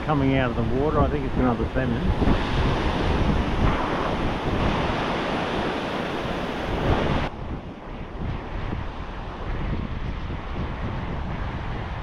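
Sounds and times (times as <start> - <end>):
ocean surf washing in: 0.0 - 12.0
wind buffeting microphone: 0.0 - 12.0.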